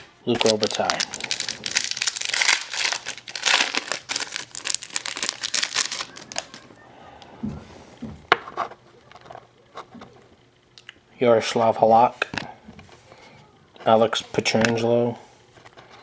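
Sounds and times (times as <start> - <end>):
foil wrapper crinkling and tearing: 0.0 - 6.8.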